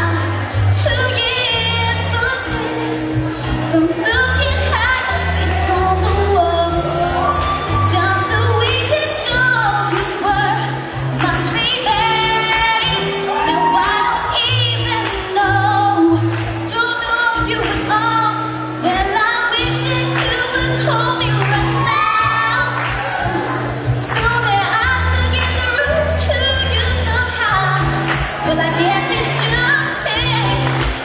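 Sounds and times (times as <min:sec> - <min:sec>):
backing music with low bass: 0:00.0 - 0:16.7
woman singing: 0:00.0 - 0:31.0.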